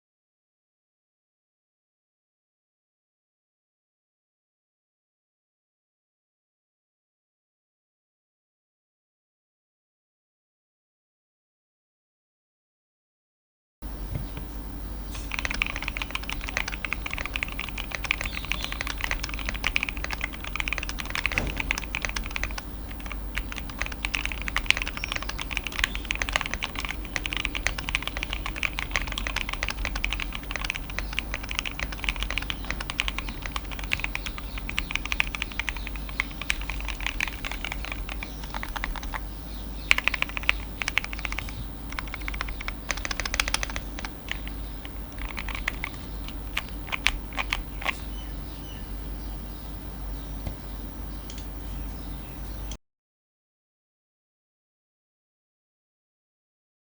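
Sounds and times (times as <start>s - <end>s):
fast typing on mechanical keyboard: 15.0s - 48.6s.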